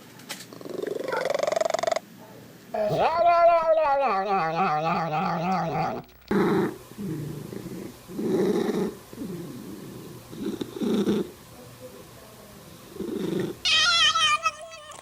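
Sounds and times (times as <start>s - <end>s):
cat yowling: 13.6s - 15.0s.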